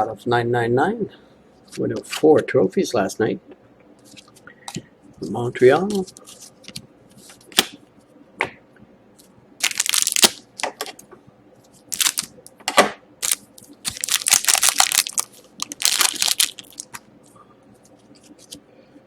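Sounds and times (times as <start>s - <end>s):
cards rustling: 5.3s - 7.7s, 9.6s - 10.4s, 11.9s - 12.3s, 13.2s - 18.6s
wrapper crinkling: 9.6s - 10.7s, 11.9s - 12.3s, 13.2s - 17.1s.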